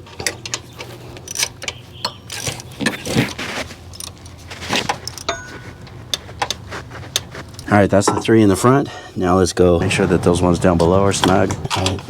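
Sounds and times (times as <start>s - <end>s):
hand ratchet clicking: 0.1s - 7.2s.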